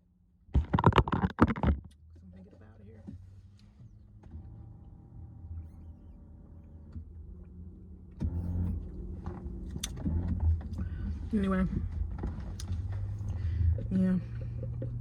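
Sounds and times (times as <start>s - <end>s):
knocks and handling noise: 0.6s - 1.9s
low rumble inside a car: 1.6s - 15.0s
motor hum: 4.2s - 15.0s.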